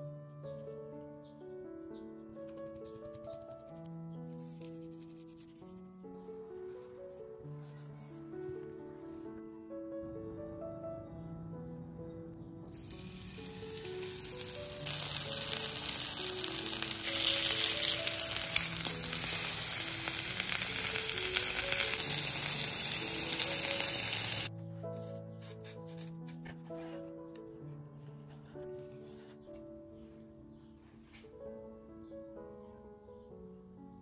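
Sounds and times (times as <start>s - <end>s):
soft background music: 0.0s - 34.0s
loud sizzling hiss: 12.7s - 24.5s.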